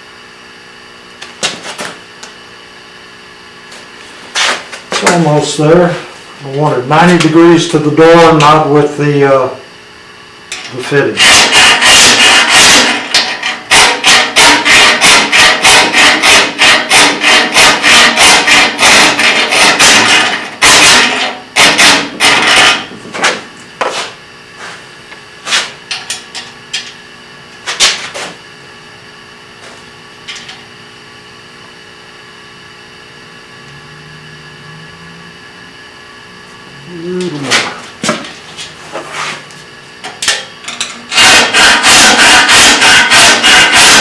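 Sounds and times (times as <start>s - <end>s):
hand tool strokes on metal: 10.5s - 25.8s, 36.9s - 44.0s.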